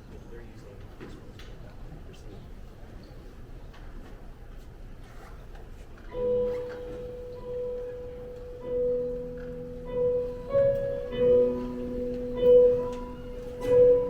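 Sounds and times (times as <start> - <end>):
slow instrumental music: 6.1 - 14.0.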